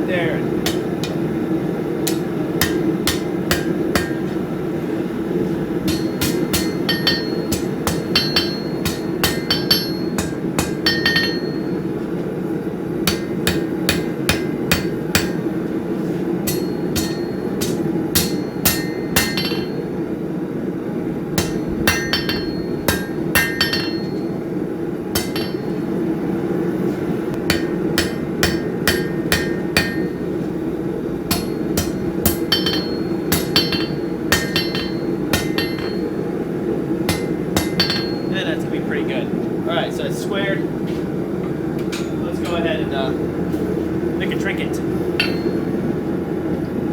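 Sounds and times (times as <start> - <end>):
steady low hum: 0.0 - 46.9
hammer blows on anvil: 0.5 - 4.5, 5.8 - 12.0, 13.0 - 15.6, 16.4 - 20.0, 21.4 - 24.4, 25.1 - 26.0, 27.4 - 30.6, 31.3 - 36.4, 37.0 - 38.6, 45.1 - 45.9
anvil ringing: 0.6 - 1.4, 2.0 - 4.3, 5.8 - 11.9, 16.4 - 20.0, 21.4 - 24.4, 25.2 - 26.0, 27.4 - 30.4, 31.3 - 36.3, 37.1 - 38.6, 45.1 - 45.9.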